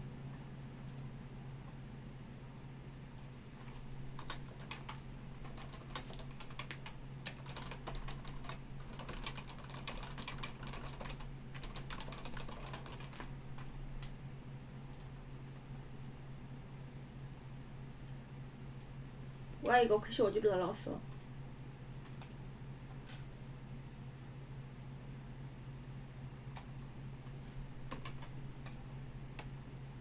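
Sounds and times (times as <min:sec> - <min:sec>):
steady low hum: 0:00.0 - 0:30.0
typing on computer keyboard: 0:03.2 - 0:13.7, 0:22.0 - 0:22.4, 0:27.9 - 0:28.8.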